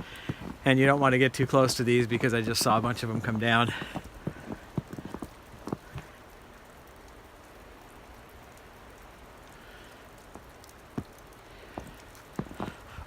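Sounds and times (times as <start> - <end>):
footsteps crunching in snow: 0.0 - 6.1, 10.3 - 13.0
falling wet snow hiss: 0.0 - 13.0.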